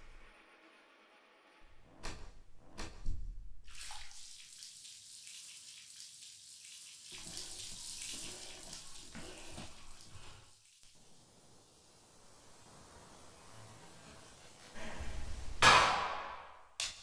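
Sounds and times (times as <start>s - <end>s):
water running from a tap: 3.6s - 12.6s
knock: 15.6s - 16.5s.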